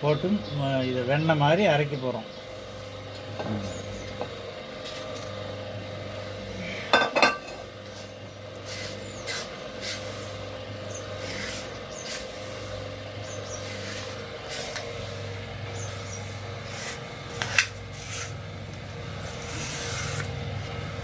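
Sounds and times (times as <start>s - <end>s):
stone rubbing on stone: 11.2s - 12.7s, 13.5s - 14.9s, 16.6s - 18.4s, 19.2s - 20.4s.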